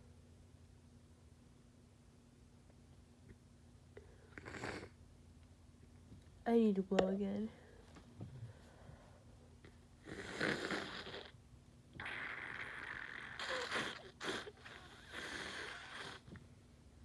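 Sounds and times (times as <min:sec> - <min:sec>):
person blowing congested nose: 0:10.0 - 0:11.3, 0:12.0 - 0:16.3.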